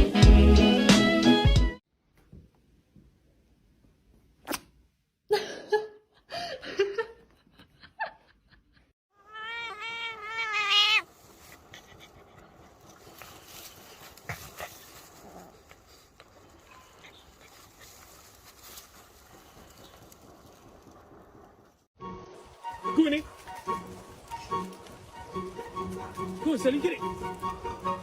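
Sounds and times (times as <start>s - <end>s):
animal crying: 9.1s - 12.6s.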